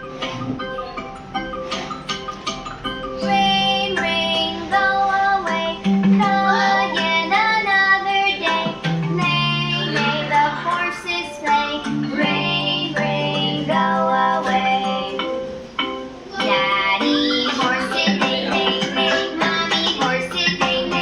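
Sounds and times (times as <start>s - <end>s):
child-like voice singing: 3.2s - 15.2s, 16.3s - 21.0s.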